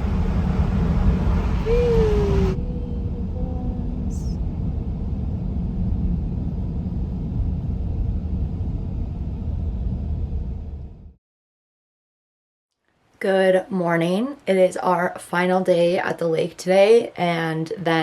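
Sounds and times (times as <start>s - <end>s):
steady low rumble: 0.0s - 11.2s.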